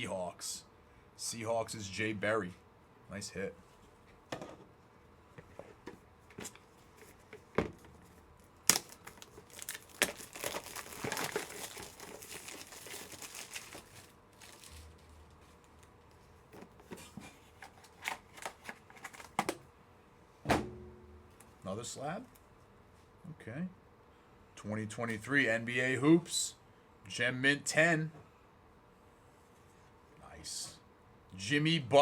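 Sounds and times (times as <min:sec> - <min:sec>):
plastic wrapping crinkling and tearing: 0:08.6 - 0:15.9
plastic card cases clicking: 0:08.7 - 0:13.8, 0:17.7 - 0:19.6.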